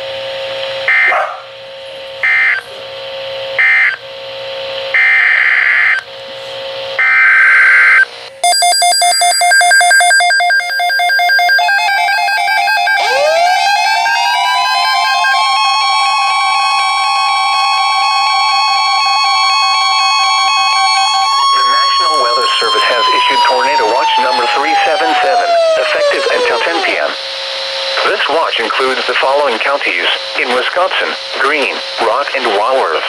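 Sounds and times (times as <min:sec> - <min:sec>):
weather radio alarm tones: 0:02.2 - 0:02.6, 0:05.0 - 0:06.0, 0:07.0 - 0:33.0
buzzy alert data bursts: 0:07.0 - 0:22.8.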